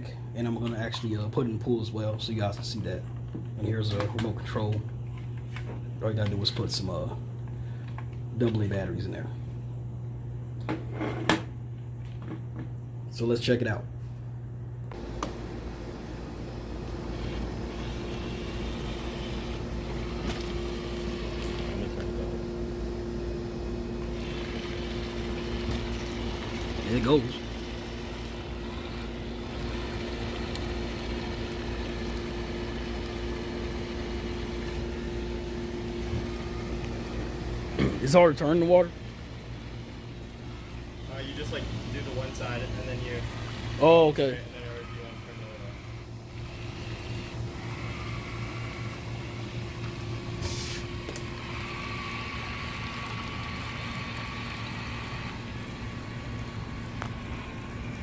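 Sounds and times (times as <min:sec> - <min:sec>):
constant low hum: 0:00.0 - 0:58.0
toy car electric motors whirring: 0:17.0 - 0:22.1, 0:24.0 - 0:34.8, 0:40.6 - 0:58.0
burst of hiss: 0:50.4 - 0:50.9.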